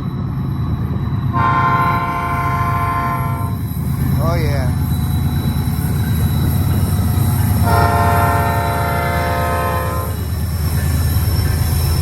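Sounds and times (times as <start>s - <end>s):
freight train rumbling: 0.0s - 12.0s
train horn chord: 1.3s - 3.6s, 7.6s - 10.2s.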